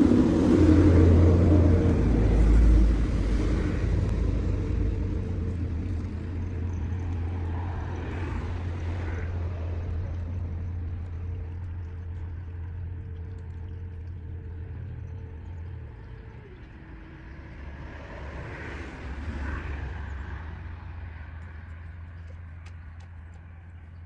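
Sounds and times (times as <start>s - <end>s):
swell of noise: 0.0s - 11.8s
motor engine humming: 0.0s - 24.0s.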